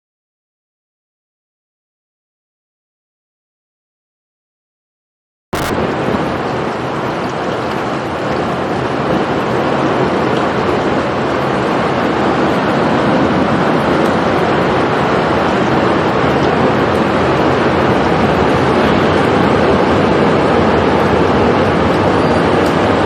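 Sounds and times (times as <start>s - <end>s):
loud steady rushing noise: 5.6s - 23.0s.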